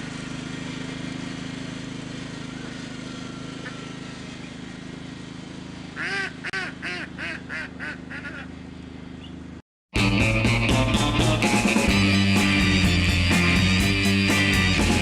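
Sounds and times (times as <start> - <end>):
small engine running: 0.0 - 15.0
bird calling: 6.0 - 8.6.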